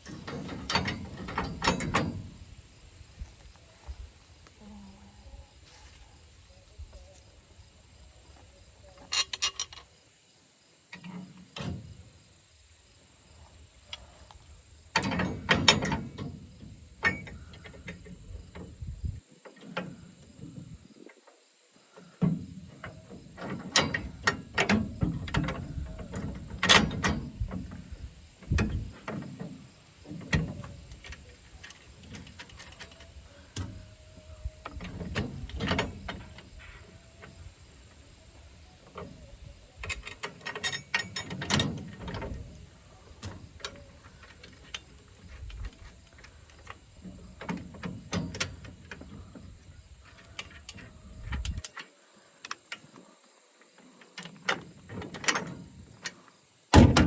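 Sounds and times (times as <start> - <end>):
hand tools clanking on metal: 0.0 - 2.6, 8.8 - 9.9, 13.9 - 18.8, 22.2 - 51.9.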